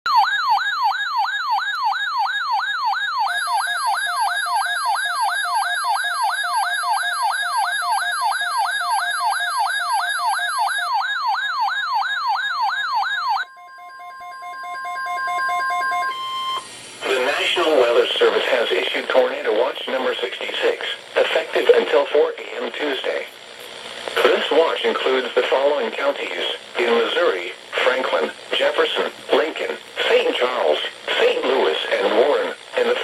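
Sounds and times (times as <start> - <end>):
electronic alert siren sweeping: 0.1 - 16.7.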